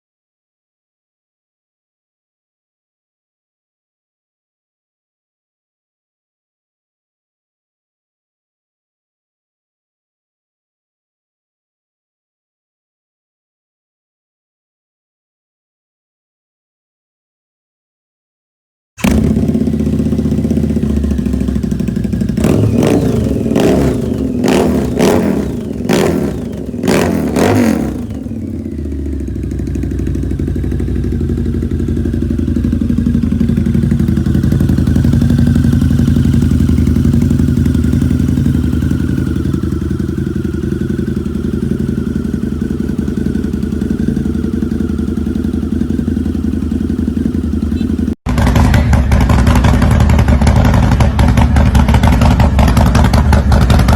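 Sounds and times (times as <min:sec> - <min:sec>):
motorcycle engine revving: 0:19.0 - 0:53.9
motorcycle engine running loudly: 0:19.0 - 0:53.9.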